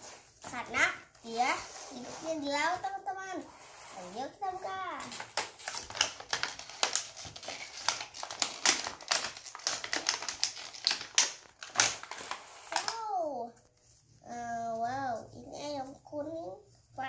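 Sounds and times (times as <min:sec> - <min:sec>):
packaging crackling and clicking: 0:05.0 - 0:13.0.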